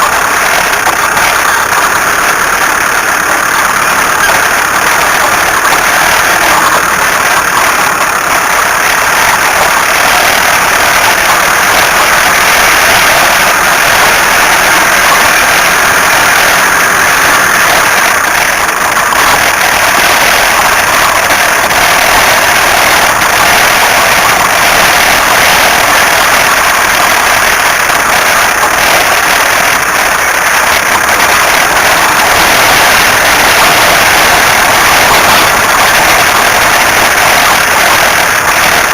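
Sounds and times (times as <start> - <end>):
car making harsh steady noise: 0.0 - 38.9.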